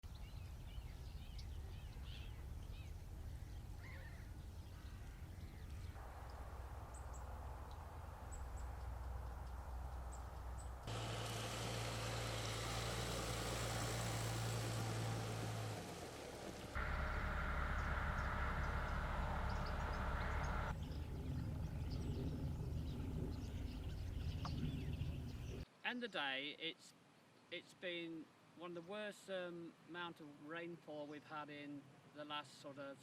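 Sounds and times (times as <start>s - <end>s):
birds chirping: 0.0s - 10.9s, 12.4s - 25.6s
low constant drone: 4.5s - 10.9s, 16.7s - 25.6s
low rumble: 16.8s - 25.6s.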